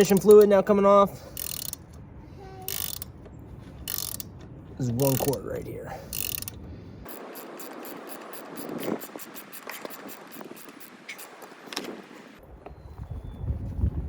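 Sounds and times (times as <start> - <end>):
ratchet wrench clicking: 1.3 - 1.8, 2.7 - 3.1, 3.9 - 4.3, 5.0 - 5.4, 6.1 - 11.3.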